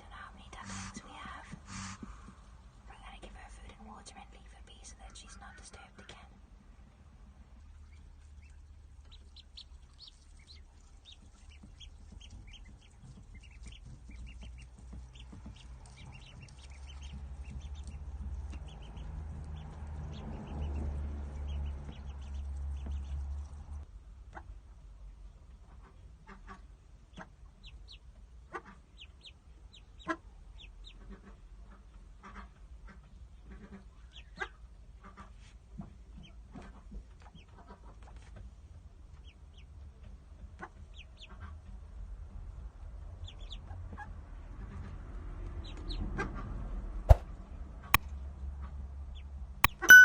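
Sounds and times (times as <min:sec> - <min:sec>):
ducklings peeping: 0:00.6 - 0:02.8, 0:07.6 - 0:24.4, 0:25.8 - 0:35.4, 0:39.1 - 0:42.0, 0:43.2 - 0:45.0.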